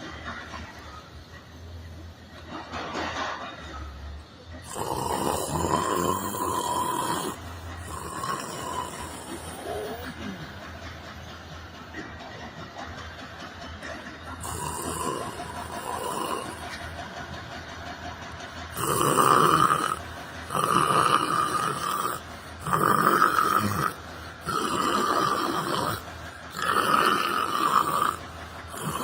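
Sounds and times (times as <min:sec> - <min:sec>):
person snoring: 0:04.6 - 0:10.5, 0:14.4 - 0:16.8, 0:18.7 - 0:29.0.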